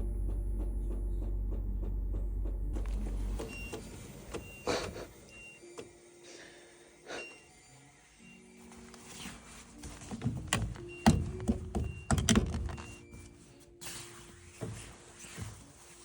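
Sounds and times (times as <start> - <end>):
low motor hum: 0.0 - 5.1
clicks and knocks: 10.1 - 13.0.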